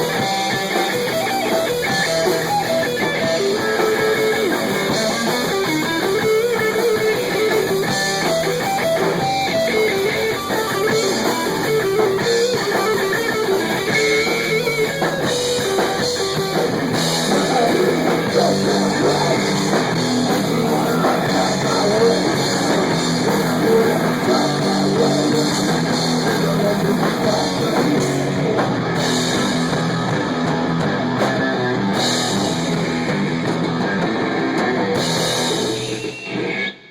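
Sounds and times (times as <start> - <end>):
drum kit playing: 0.0 - 36.4
electric guitar: 0.0 - 36.9.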